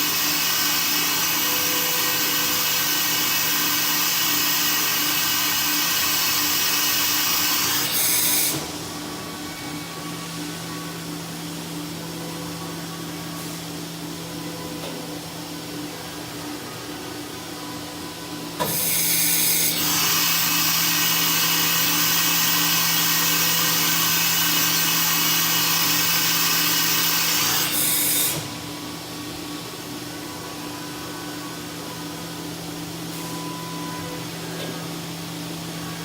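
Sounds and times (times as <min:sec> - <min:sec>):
milling machine humming: 0:00.0 - 0:36.0.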